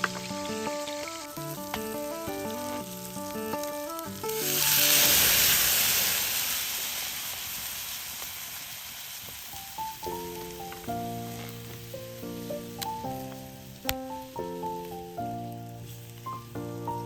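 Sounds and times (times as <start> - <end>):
background music: 0.0 - 5.3, 9.8 - 17.0
food sizzling in hot pan: 0.0 - 17.0.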